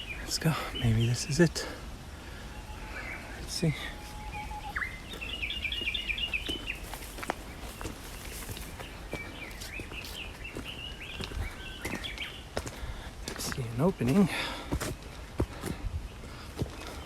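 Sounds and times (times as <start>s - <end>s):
small bird chirping: 2.6s - 12.5s
footsteps on a trail: 2.8s - 17.0s.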